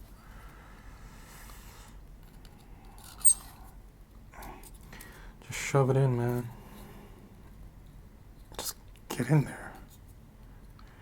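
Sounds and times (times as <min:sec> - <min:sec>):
sharp high click-squeak: 0:03.2 - 0:03.4.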